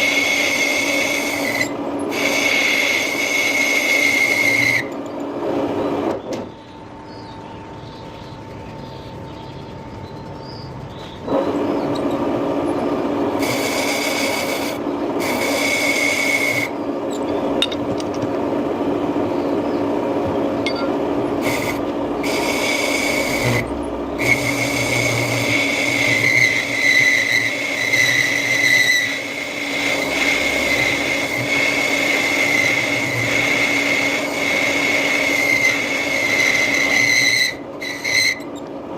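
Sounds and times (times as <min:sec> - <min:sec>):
high lathe whine: 0:00.0 - 0:06.2, 0:20.6 - 0:38.6
lathe tool rasping on iron: 0:21.4 - 0:38.5.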